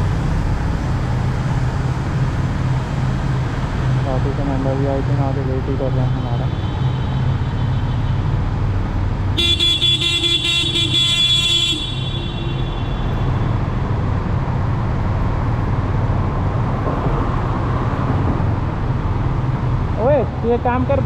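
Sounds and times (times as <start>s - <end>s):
engine and road rumble: 0.0s - 21.0s
vehicle horn: 9.3s - 13.6s.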